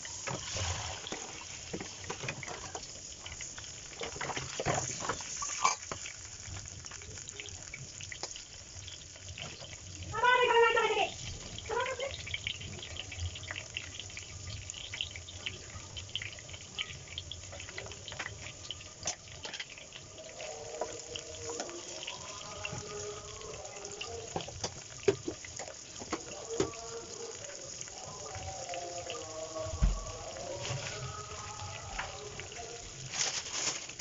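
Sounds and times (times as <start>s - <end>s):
tap water running into sink: 20.8s - 27.0s, 28.2s - 30.9s.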